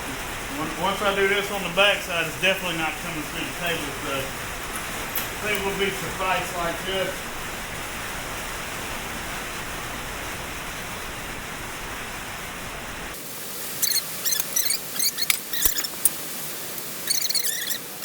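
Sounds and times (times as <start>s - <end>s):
steady hiss: 0.0s - 18.0s
metal hardware clinking on steel: 3.6s - 6.0s, 14.3s - 18.0s.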